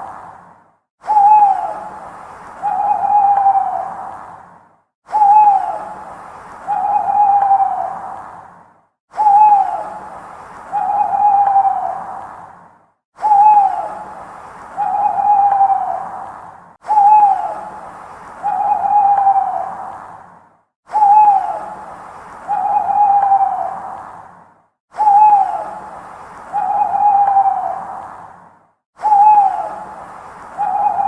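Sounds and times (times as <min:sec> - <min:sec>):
owl hooting: 0:01.0 - 0:04.2, 0:05.1 - 0:08.2, 0:09.2 - 0:12.3, 0:13.2 - 0:20.0, 0:20.9 - 0:24.0, 0:25.0 - 0:28.1, 0:29.0 - 0:31.0.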